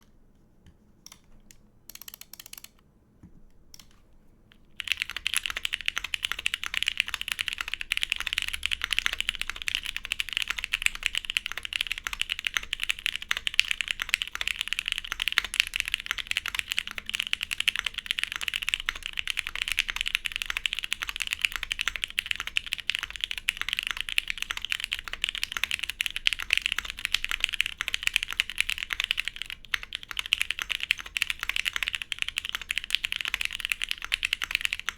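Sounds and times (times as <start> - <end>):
typing on mechanical keyboard: 1.9 - 2.8, 4.8 - 34.9.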